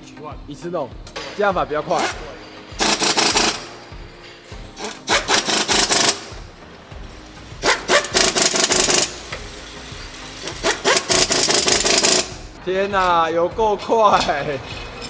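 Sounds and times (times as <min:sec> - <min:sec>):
power tool clattering: 0:01.1 - 0:03.8, 0:04.8 - 0:06.4, 0:07.6 - 0:12.5.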